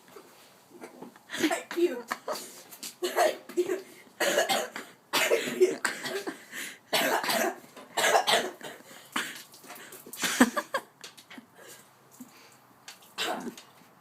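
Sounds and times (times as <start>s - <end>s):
person coughing and gagging: 0.8s - 2.4s, 3.0s - 9.4s, 13.2s - 13.6s.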